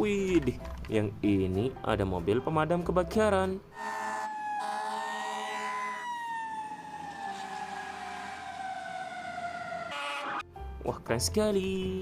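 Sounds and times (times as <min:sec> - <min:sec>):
toy siren wailing: 0:03.8 - 0:10.4.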